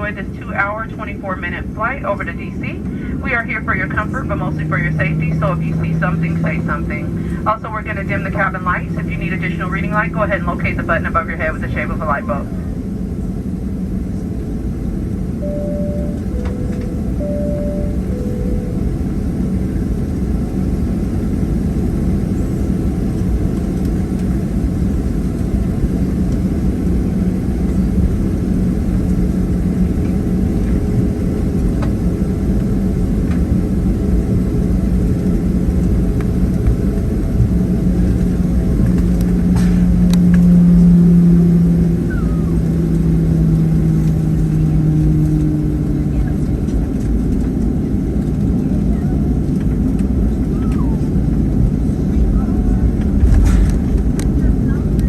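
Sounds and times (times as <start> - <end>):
jet engine rumble in cabin: 0.0 - 55.0
two-note high-low chime: 15.4 - 19.3.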